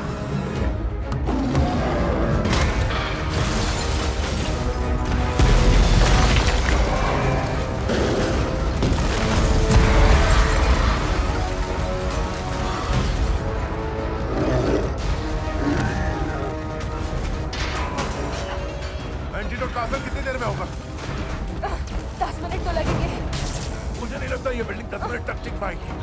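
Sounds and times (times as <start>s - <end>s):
action film score: 0.0s - 26.0s
deep rumbling: 0.0s - 26.0s
heavy booms and crashes: 2.0s - 18.2s.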